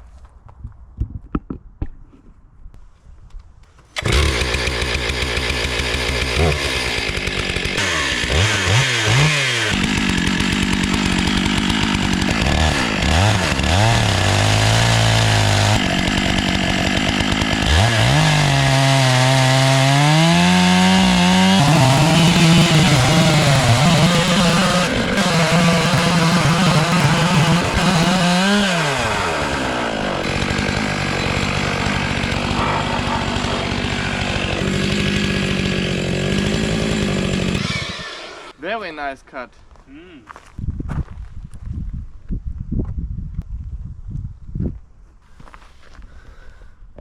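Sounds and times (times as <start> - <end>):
chainsaw cutting wood: 3.9 - 38.6.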